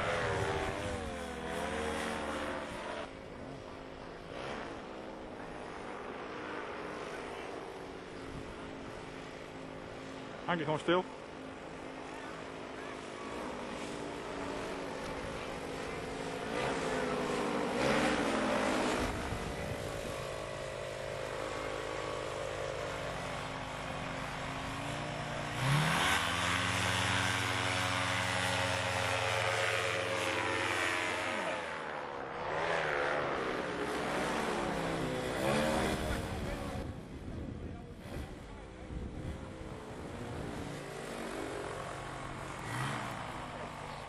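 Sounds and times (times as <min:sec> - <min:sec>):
paramotor engine revving: 0:12.0 - 0:37.0, 0:39.6 - 0:44.0.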